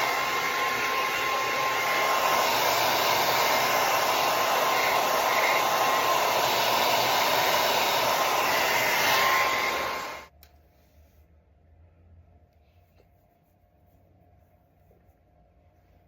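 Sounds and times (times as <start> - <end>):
hair dryer blowing: 0.0 - 10.3.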